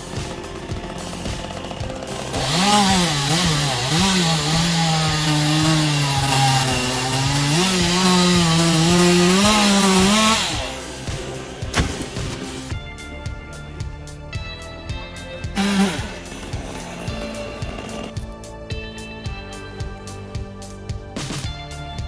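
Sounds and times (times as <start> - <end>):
chainsaw cutting wood: 0.0 - 12.8, 15.4 - 18.4.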